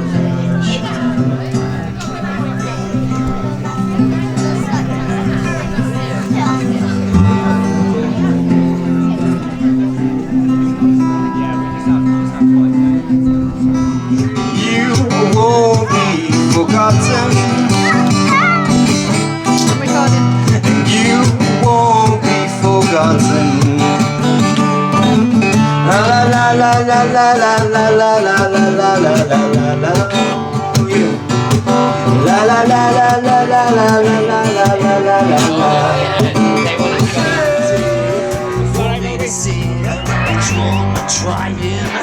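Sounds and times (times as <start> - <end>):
guitar-backed song: 0.0 - 42.0
sliding lead melody: 6.8 - 11.4
person singing: 32.1 - 42.0.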